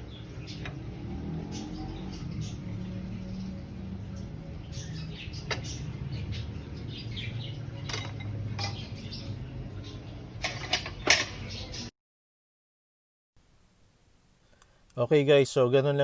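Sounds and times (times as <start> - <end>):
low steady hum: 0.0 - 11.9
metal tools clinking: 7.8 - 8.9, 10.4 - 11.5.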